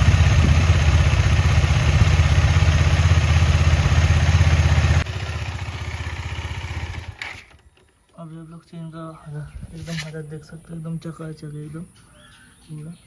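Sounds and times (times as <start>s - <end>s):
motorcycle engine running: 0.0s - 7.6s.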